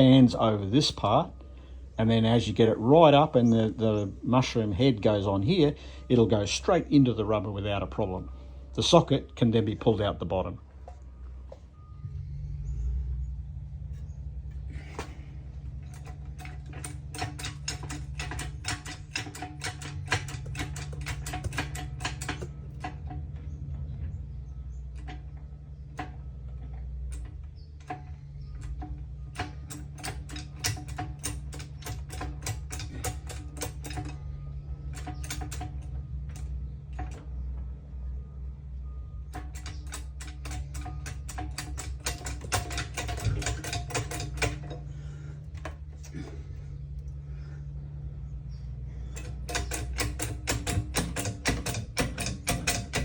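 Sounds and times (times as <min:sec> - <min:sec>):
steady low hum: 0:00.0 - 0:53.0
jack ratcheting clicks: 0:15.8 - 0:23.2, 0:24.9 - 0:37.3, 0:39.3 - 0:45.0, 0:49.1 - 0:53.0.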